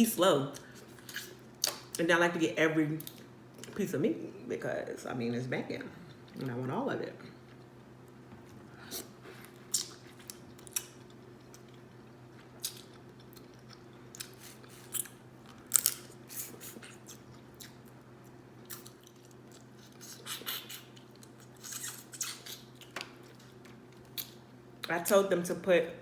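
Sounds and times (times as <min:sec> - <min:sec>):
faint steady hum: 0:00.0 - 0:26.0
chewing and mouth smacking: 0:08.4 - 0:18.0.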